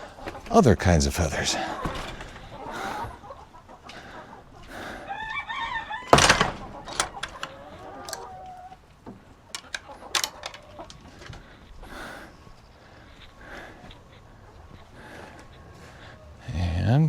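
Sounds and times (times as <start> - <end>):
chickens calling: 0.0 - 17.0
sharp clicks: 9.6 - 11.0.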